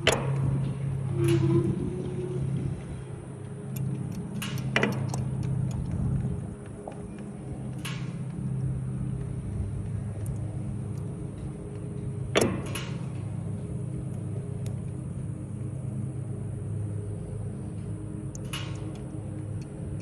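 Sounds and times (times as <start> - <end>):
windmill metallic clunk: 0.0 - 8.9, 9.6 - 14.6
steady low rumble: 0.0 - 20.0.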